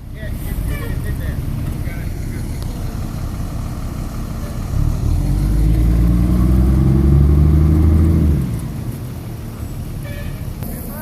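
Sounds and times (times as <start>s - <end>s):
garbage truck engine revving: 0.2s - 8.8s.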